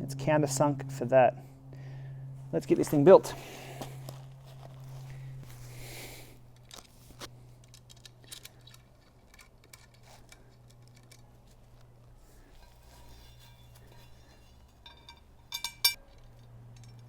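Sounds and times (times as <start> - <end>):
steady low hum: 0.0 - 17.0
faint clicks and scrapes: 6.6 - 15.2.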